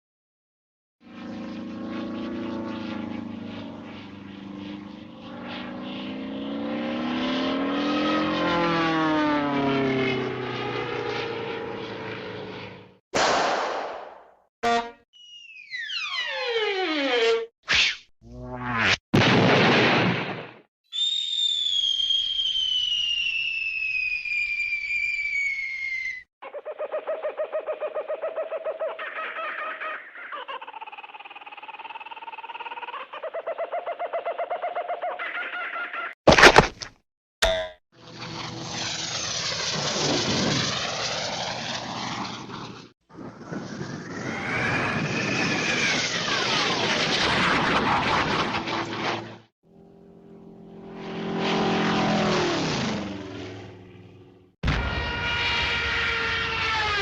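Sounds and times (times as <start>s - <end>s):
cartoon propeller engine droning: 1.0s - 13.0s, 13.6s - 36.2s, 37.5s - 57.0s
falling whistle: 14.7s - 18.0s, 20.9s - 26.3s, 54.6s - 57.0s
pulsing warbling pitched sound: 18.2s - 19.0s.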